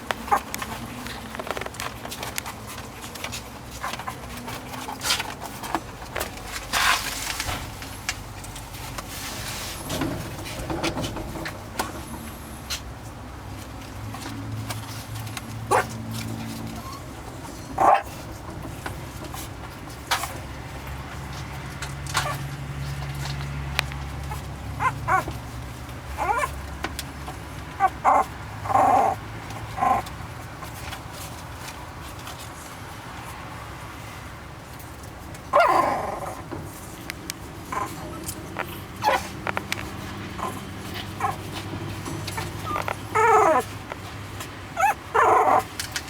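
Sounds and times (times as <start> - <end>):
puppies yipping and whining: 0.2 - 2.7, 15.7 - 18.4, 22.1 - 22.4, 24.2 - 30.8, 35.5 - 36.8, 37.6 - 46.0.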